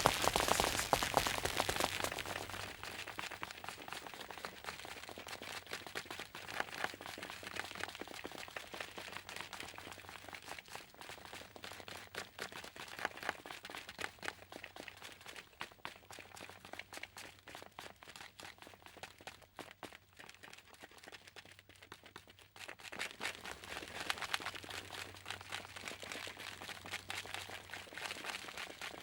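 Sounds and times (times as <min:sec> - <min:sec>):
quick footsteps: 0:00.0 - 0:04.3.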